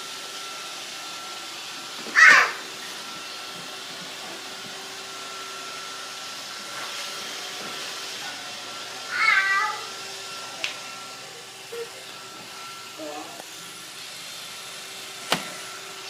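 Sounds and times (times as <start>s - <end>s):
robot vacuum running: 0.0s - 16.0s
short high-pitched cry: 2.2s - 2.6s.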